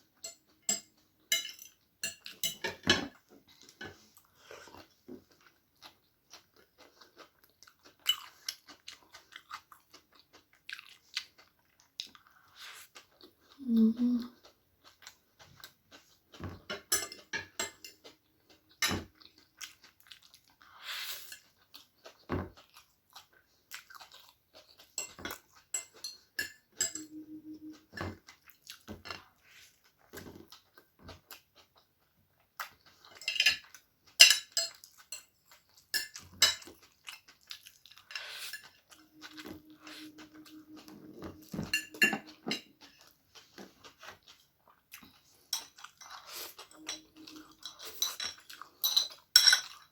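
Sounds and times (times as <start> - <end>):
cutlery clicking on a plate: 0.2 - 3.2, 16.6 - 18.1, 33.1 - 35.3, 35.9 - 36.8, 46.7 - 49.8
chewing noodles: 3.1 - 49.9.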